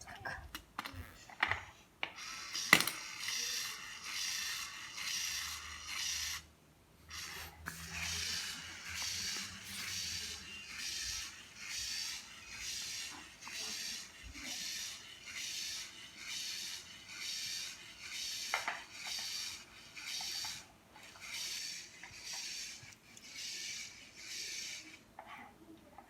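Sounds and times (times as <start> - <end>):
toy robot motor scraping: 0.8 - 6.5, 7.1 - 25.5.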